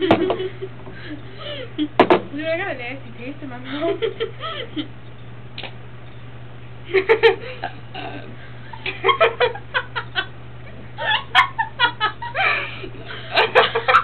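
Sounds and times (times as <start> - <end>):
girls giggling: 6.9 - 14.0.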